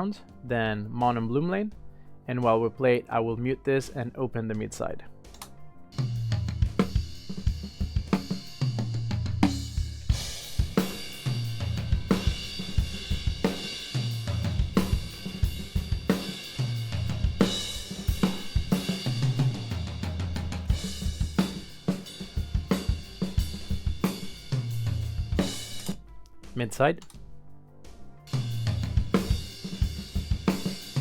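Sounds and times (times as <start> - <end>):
snare drum: 6.1 - 26.6, 28.4 - 31.0
kick drum: 11.6 - 13.5.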